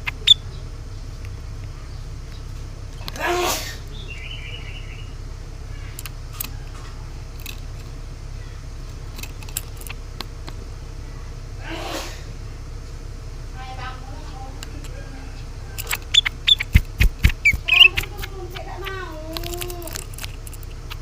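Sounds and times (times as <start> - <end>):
songbird calling and chirping: 0.0 - 11.6, 13.6 - 21.0
steady low hum: 0.0 - 21.0
sharp clicks: 15.8 - 21.0.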